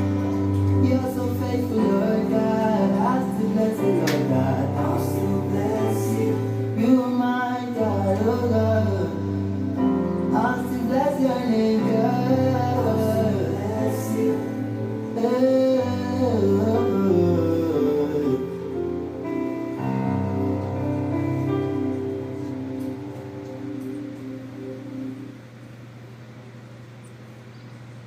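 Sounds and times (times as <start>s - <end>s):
gospel singing: 0.0s - 19.1s
held accompaniment chords: 0.0s - 27.0s.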